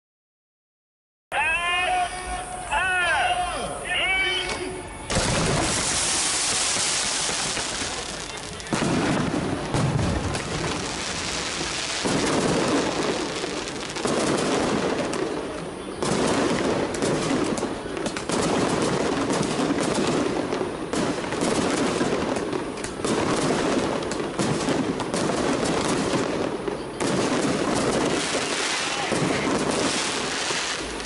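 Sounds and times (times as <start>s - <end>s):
firecrackers crackling: 4.3s - 31.0s.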